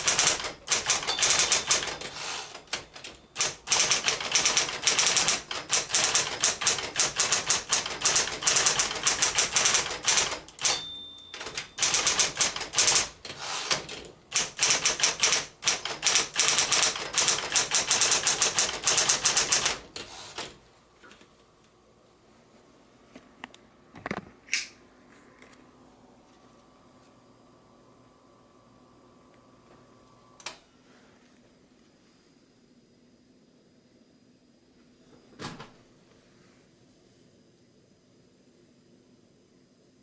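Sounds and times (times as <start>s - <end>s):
typewriter keystroke clacks: 0.0s - 20.6s
typewriter bell ringing: 0.1s - 13.1s.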